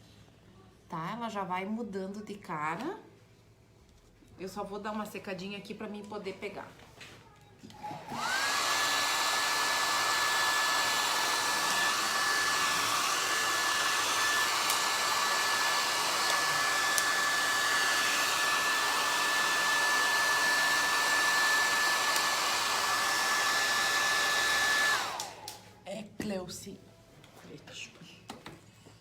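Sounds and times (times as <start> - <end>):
hot-air blower whining: 7.7 - 25.8.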